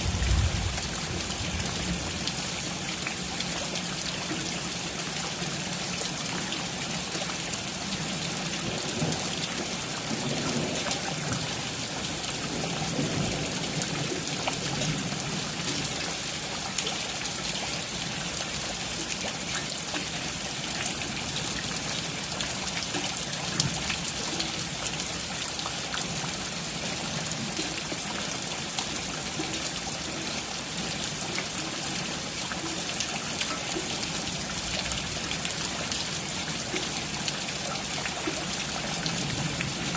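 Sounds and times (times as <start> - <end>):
steady rain falling: 0.0 - 39.9
drips and taps: 29.3 - 30.5.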